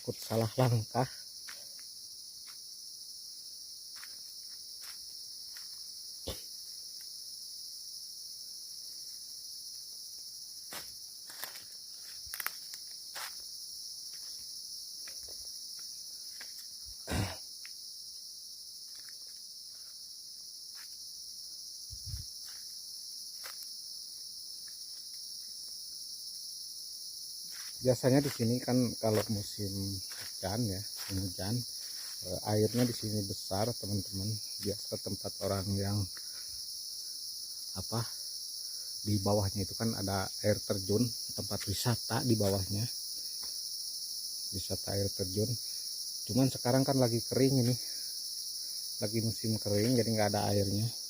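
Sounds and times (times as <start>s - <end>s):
insects chirping: 0.0s - 51.0s
footsteps: 4.0s - 5.8s, 10.7s - 13.4s, 27.5s - 33.1s.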